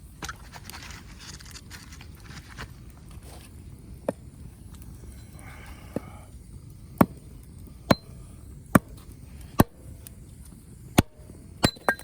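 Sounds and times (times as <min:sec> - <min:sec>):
axe chopping firewood: 0:07.9 - 0:08.1, 0:08.7 - 0:09.9, 0:11.0 - 0:12.0.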